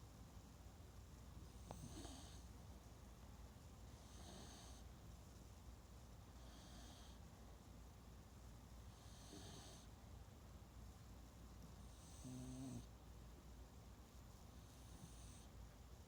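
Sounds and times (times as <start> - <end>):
gentle snoring: 1.6 - 2.5, 4.0 - 4.9, 6.4 - 7.2, 8.9 - 9.9, 11.8 - 12.9, 14.6 - 15.5.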